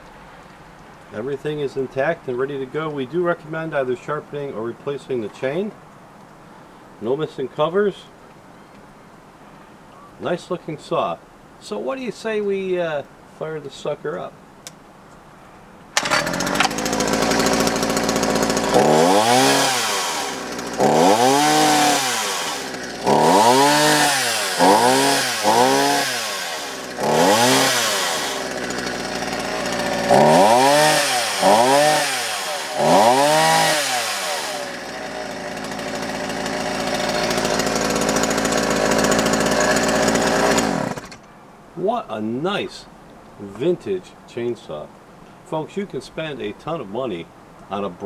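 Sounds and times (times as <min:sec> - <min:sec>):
chainsaw idling and revving: 0:16.0 - 0:41.3.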